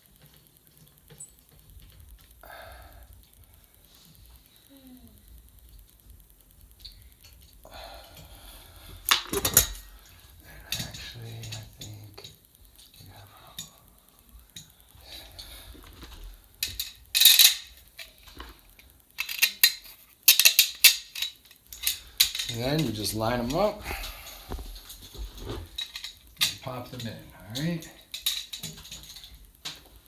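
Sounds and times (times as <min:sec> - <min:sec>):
metal hardware clinking: 0:09.1 - 0:13.0, 0:16.0 - 0:18.6, 0:19.2 - 0:29.9.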